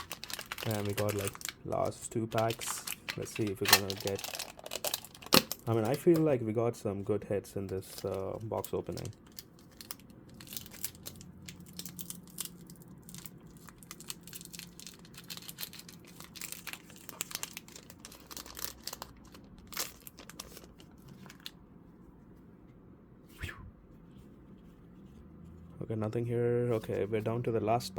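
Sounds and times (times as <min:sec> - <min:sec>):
foil pack crinkling: 0:00.0 - 0:06.4, 0:07.6 - 0:21.6.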